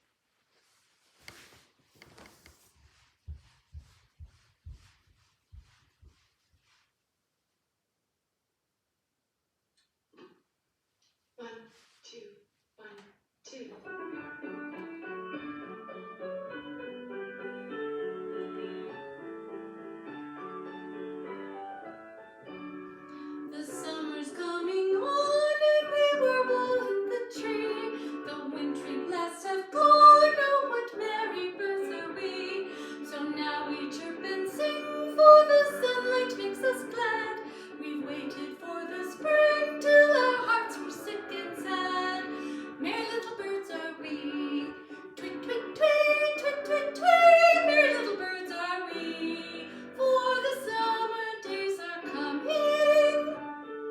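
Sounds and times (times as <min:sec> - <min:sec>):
light instrumental accompaniment: 0:13.7 - 0:53.9
woman singing with vibrato: 0:23.5 - 0:53.4.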